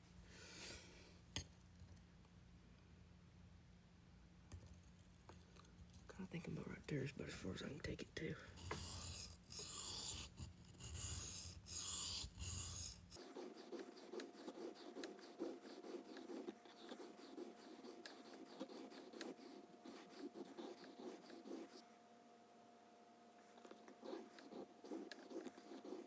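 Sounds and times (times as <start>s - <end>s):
faint steady hum: 0.0s - 26.0s
knife scraping on whetstone: 8.6s - 19.4s.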